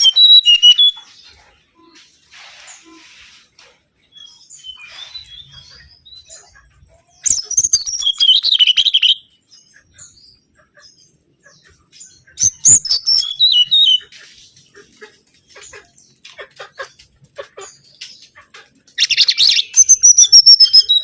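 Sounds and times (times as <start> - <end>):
bird whistled song: 0.0 - 1.1, 7.2 - 9.3, 12.4 - 14.1, 19.0 - 21.0
faint bird chirps: 4.2 - 10.8, 11.4 - 14.2.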